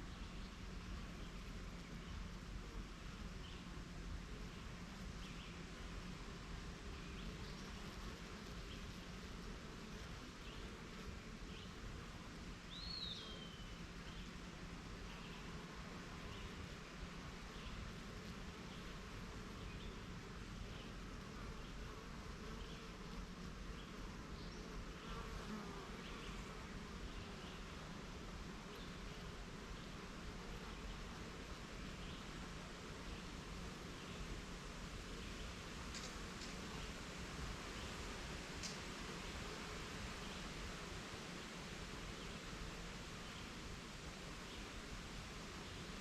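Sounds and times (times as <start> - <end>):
honeybees buzzing: 0.0 - 46.0
faint bird chirps: 12.7 - 14.3.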